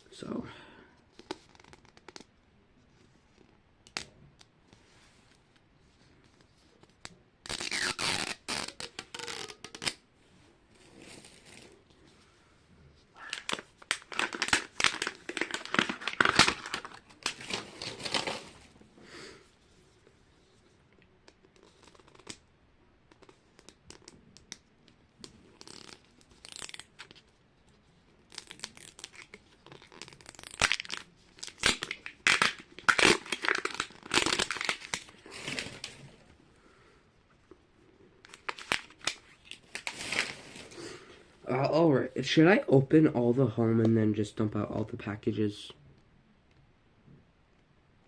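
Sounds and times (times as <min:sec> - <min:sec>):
plastic wrapping crinkling and tearing: 0:07.5 - 0:10.0, 0:13.2 - 0:18.7, 0:25.5 - 0:27.2, 0:28.3 - 0:36.3, 0:38.2 - 0:40.9.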